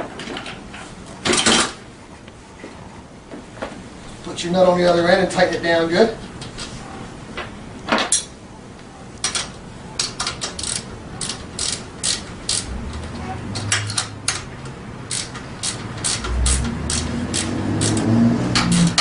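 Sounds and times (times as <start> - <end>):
socket ratchet wrench clicking: 10.1 - 14.5, 15.1 - 19.0.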